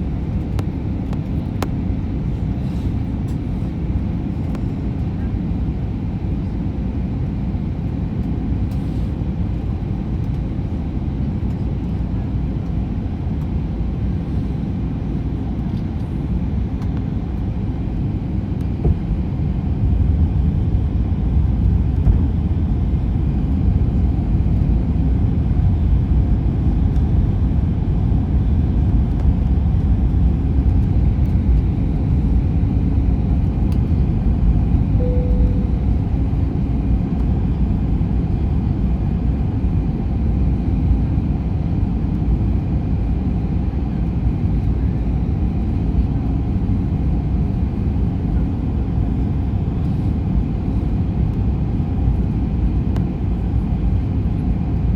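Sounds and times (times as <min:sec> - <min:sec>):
short faint tone: 0:35.0 - 0:36.6.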